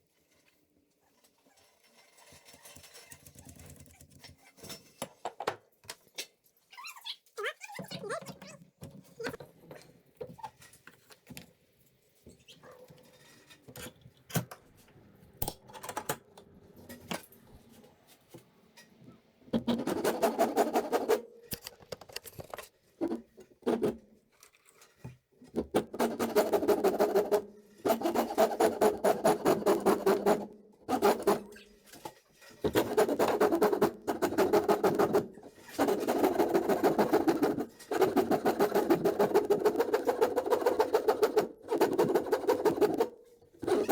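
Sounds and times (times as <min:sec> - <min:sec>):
tool rasping wood: 0:25.8 - 0:31.5, 0:32.6 - 0:43.9.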